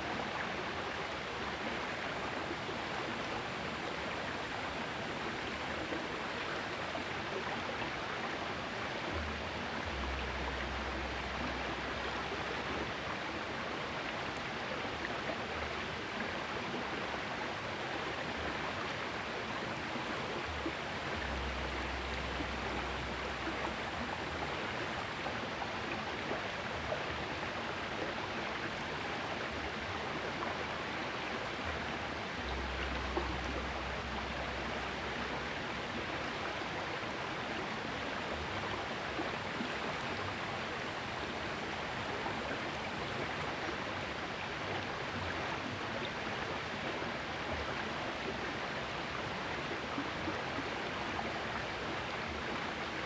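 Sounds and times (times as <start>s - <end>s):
river water rushing: 18.6s - 53.0s
low rumble: 21.1s - 24.2s, 32.4s - 35.6s.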